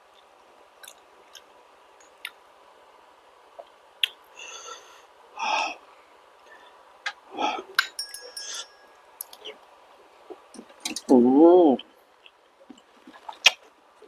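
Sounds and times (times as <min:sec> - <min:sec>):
light clink: 0:07.8 - 0:09.6.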